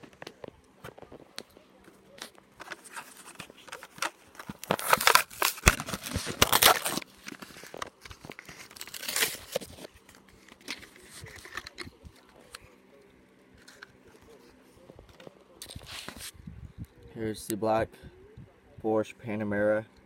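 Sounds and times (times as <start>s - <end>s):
plastic packaging crinkling: 2.2s - 12.6s
cardboard tearing: 2.6s - 10.0s.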